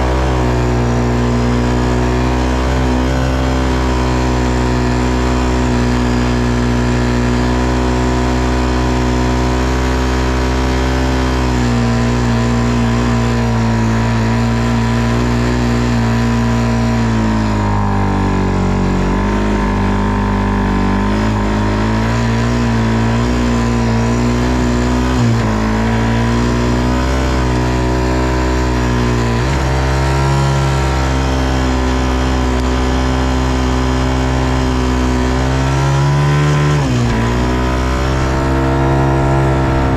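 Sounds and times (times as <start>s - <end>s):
atv engine droning: 0.0s - 39.9s.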